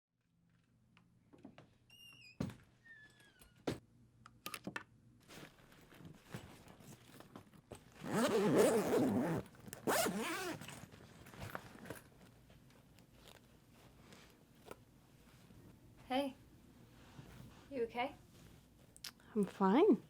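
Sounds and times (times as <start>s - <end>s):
zipper pulled: 7.9s - 12.0s.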